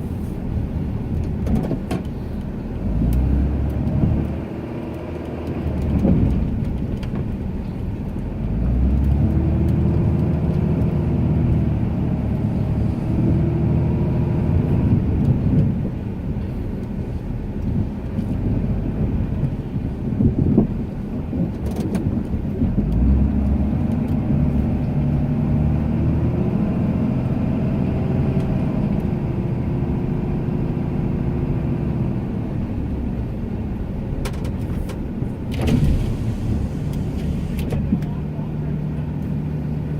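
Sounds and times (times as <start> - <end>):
pickup truck engine under load: 20.3 - 38.0.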